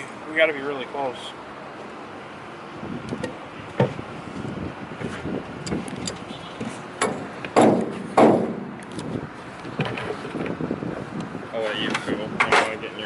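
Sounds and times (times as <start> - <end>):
handling noise: 3.1 - 10.6
hard knocks on metal siren: 7.0 - 8.7.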